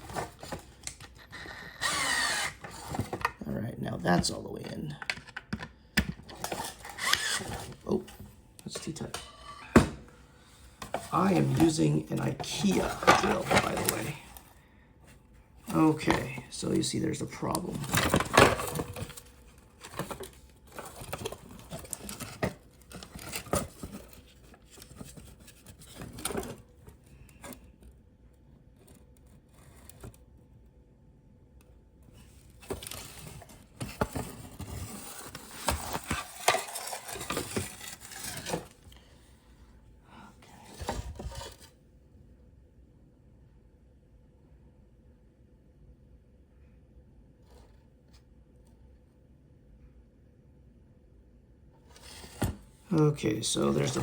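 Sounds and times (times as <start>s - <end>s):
plastic parts clicking and rattling: 12.3s - 14.4s, 17.4s - 27.6s, 32.6s - 38.8s.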